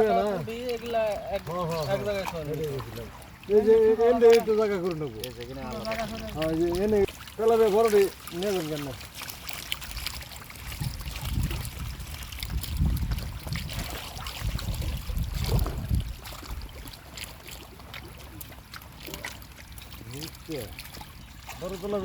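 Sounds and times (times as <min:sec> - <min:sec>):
pond water sloshing: 0:00.0 - 0:22.0
low rumble on microphone: 0:10.6 - 0:16.9.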